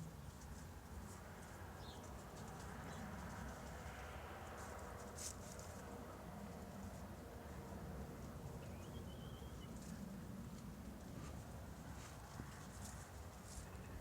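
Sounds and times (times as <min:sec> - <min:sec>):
bird twitter: 0:08.6 - 0:09.7.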